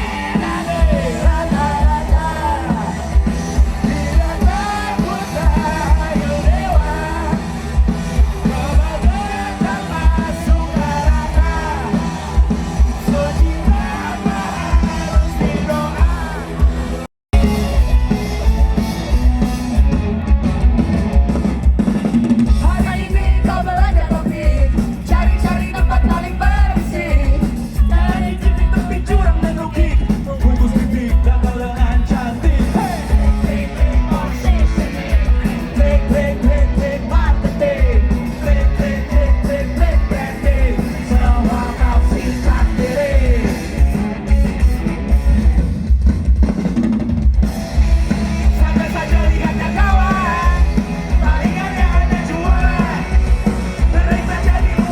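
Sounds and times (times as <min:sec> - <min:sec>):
person singing: 0:00.0 - 0:07.5, 0:22.6 - 0:44.5, 0:48.4 - 0:53.2, 0:53.8 - 0:54.9
rock band playing: 0:00.0 - 0:54.9.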